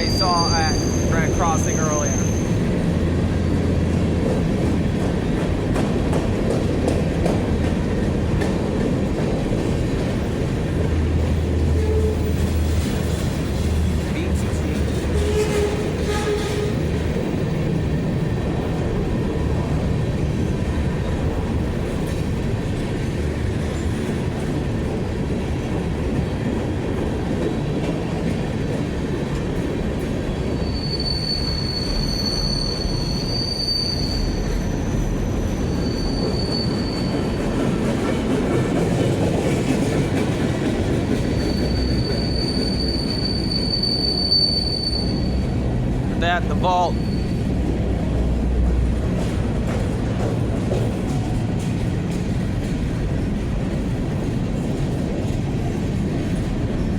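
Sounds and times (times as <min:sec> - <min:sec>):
train wheels squealing: 0:00.0 - 0:02.8, 0:15.0 - 0:16.9, 0:30.1 - 0:38.6, 0:40.8 - 0:45.7, 0:46.8 - 0:47.9
freight train rolling past: 0:00.0 - 0:56.9.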